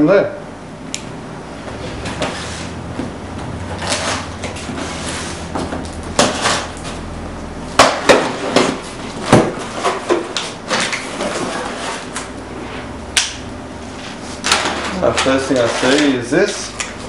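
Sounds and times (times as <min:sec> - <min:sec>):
box knocks and clatters: 0:07.8 - 0:11.5.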